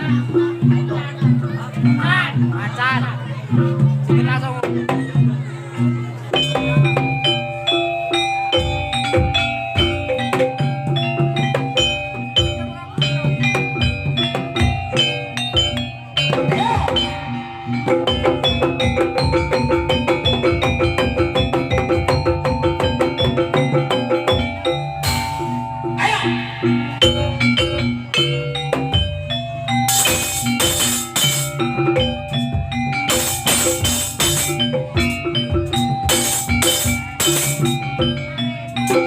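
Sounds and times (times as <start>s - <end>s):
metallophones and gong-chimes: 5.8s - 39.0s
fast drum beat: 8.5s - 25.6s, 26.2s - 39.0s.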